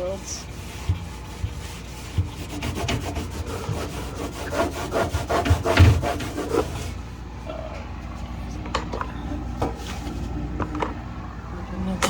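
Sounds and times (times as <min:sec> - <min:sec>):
cloth scrubbing fridge interior: 0:00.0 - 0:07.2.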